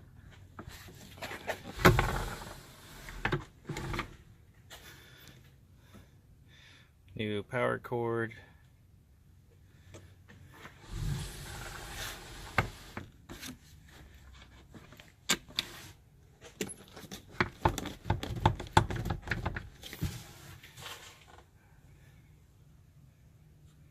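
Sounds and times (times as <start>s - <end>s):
sliding metal scrape: 10.8s - 13.1s.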